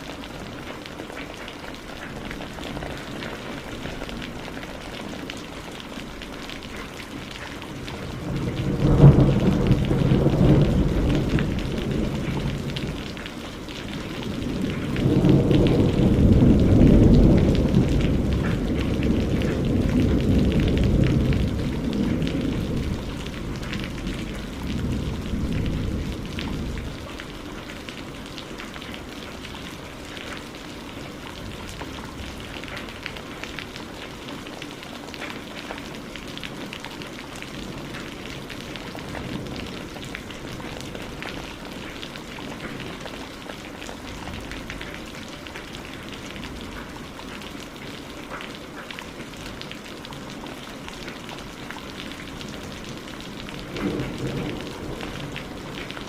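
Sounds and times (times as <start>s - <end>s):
rain pattering: 0.0s - 56.0s
low rumble of thunder: 7.6s - 33.6s, 36.6s - 43.1s, 52.2s - 56.0s.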